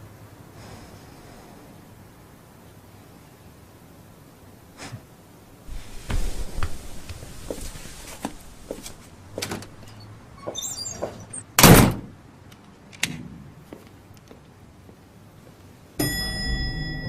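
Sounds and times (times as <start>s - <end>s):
brief high squeak: 9.9s - 11.4s.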